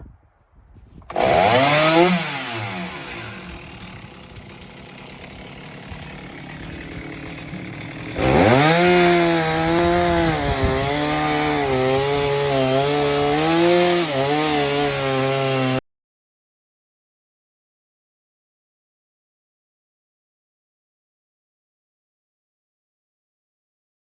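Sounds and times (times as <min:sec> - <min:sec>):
chainsaw ripping a log: 0:01.0 - 0:15.8.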